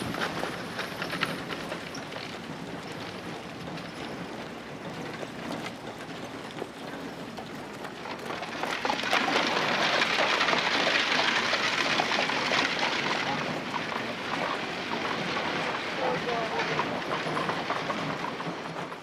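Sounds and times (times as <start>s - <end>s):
dense rattling clatter: 5.1s - 19.0s.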